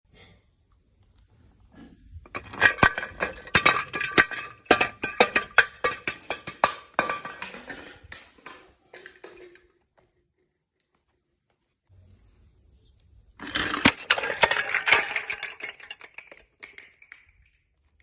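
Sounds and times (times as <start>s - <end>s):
glass crushing and breaking: 2.3s - 9.8s, 13.4s - 17.0s.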